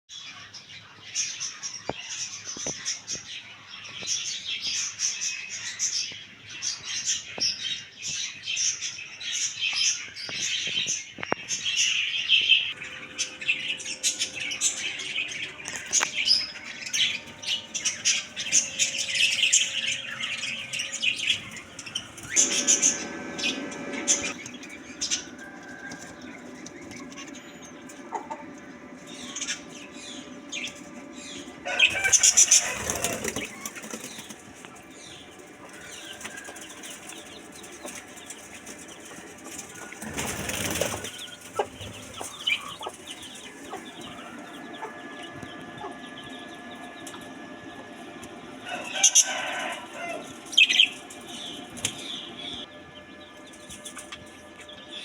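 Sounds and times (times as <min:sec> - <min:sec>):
parrots chirping and squawking: 0:09.4 - 0:47.7, 0:48.6 - 0:52.7.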